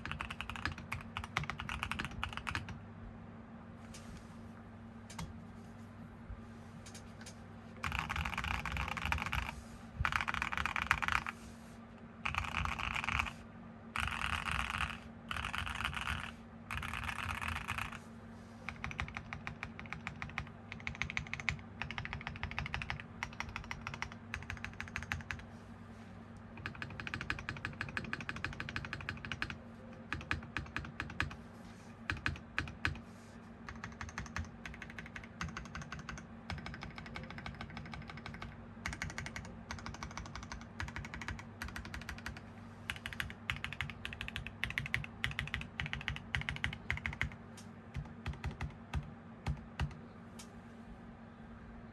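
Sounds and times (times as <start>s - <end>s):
mechanical keyboard typing: 0.0s - 2.8s, 6.9s - 11.4s, 12.2s - 13.4s, 14.0s - 18.0s, 18.7s - 25.5s, 26.6s - 31.4s, 32.1s - 33.0s, 33.6s - 50.0s.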